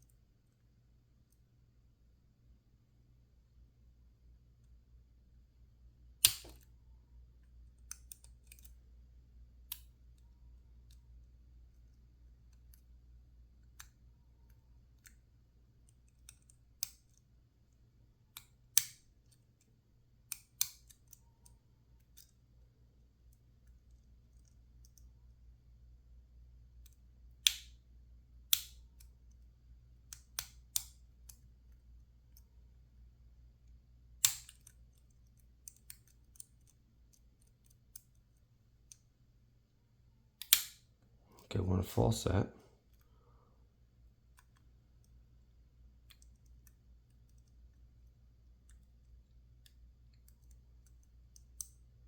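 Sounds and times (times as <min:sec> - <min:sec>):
lockpicking tools clicking: 0:34.2 - 0:39.1, 0:40.4 - 0:40.8, 0:46.0 - 0:49.0.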